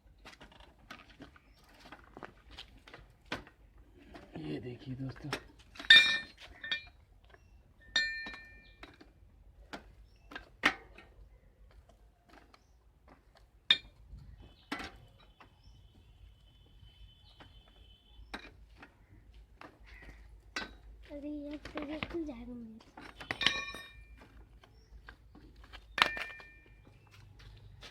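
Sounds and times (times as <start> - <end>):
spanner clinking on metal: 5.8 - 7.0, 7.8 - 9.0, 23.0 - 24.2.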